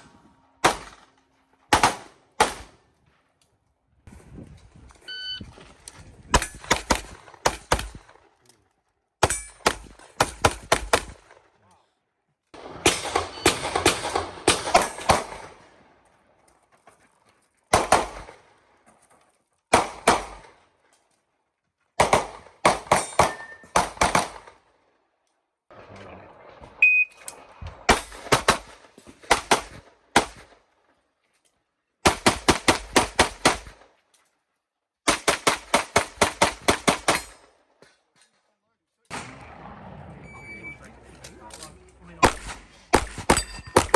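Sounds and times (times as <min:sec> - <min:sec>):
pistol shots: 0:00.6 - 0:02.8, 0:17.7 - 0:18.4, 0:19.7 - 0:20.6, 0:22.0 - 0:24.6, 0:42.2 - 0:43.9.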